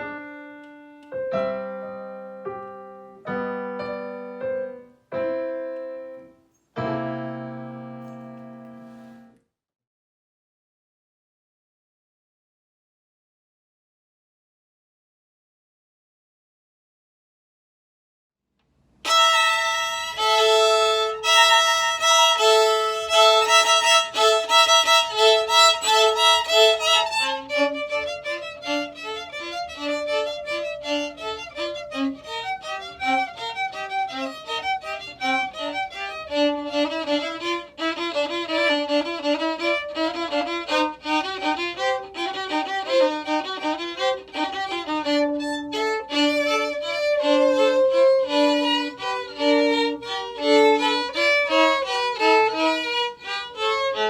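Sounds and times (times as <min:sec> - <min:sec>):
violin playing: 0:00.0 - 0:05.9, 0:19.0 - 0:54.0.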